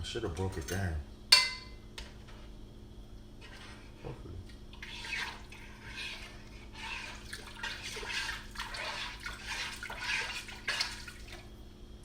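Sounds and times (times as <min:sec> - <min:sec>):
sauce sloshing in a pot: 0:03.4 - 0:11.6.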